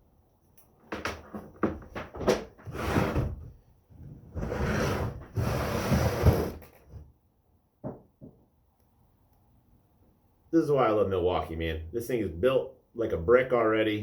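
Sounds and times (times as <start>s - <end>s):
objects rubbing and scraping: 2.6s - 3.4s, 4.2s - 7.0s.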